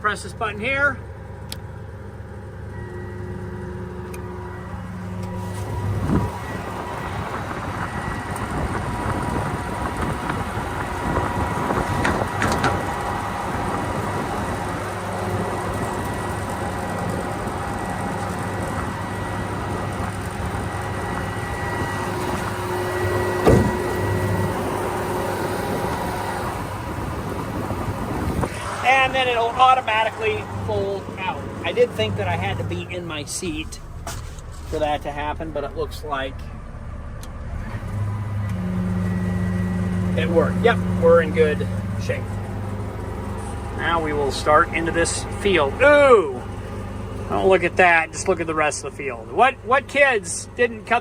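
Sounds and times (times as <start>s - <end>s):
combine harvester engine: 0.0s - 51.0s
mechanical whine: 0.0s - 51.0s
knocks: 23.4s - 23.8s.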